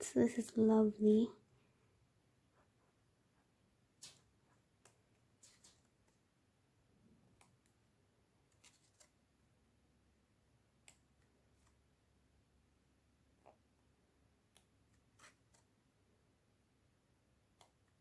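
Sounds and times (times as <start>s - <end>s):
book pages turning: 4.0s - 6.2s, 8.5s - 9.2s, 14.9s - 15.7s.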